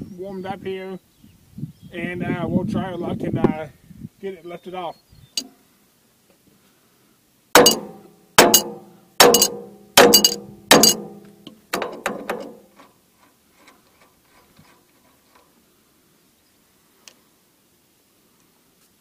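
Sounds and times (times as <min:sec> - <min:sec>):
hammer striking steel: 0:07.6 - 0:11.2.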